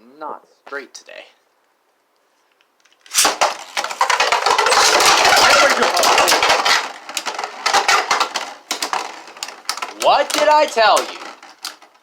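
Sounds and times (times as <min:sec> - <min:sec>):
spinning tops launched: 0:03.1 - 0:06.9
spinning tops clashing and rattling: 0:03.1 - 0:11.8.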